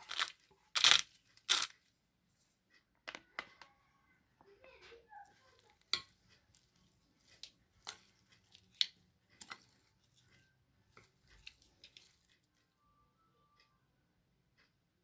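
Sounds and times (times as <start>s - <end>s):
kitchen utensils clicking and tapping: 4.7s - 12.6s.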